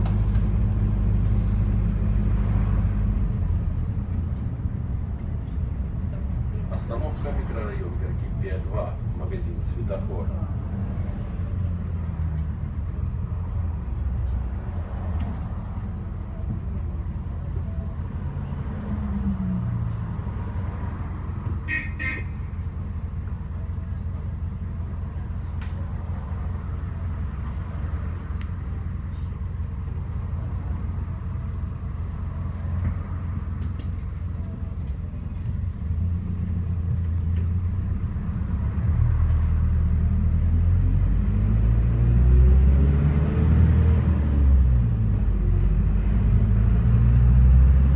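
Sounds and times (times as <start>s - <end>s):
bus engine revving up: 0.0s - 4.7s, 33.7s - 47.9s
bus diesel engine idling: 0.0s - 14.6s, 15.2s - 38.9s.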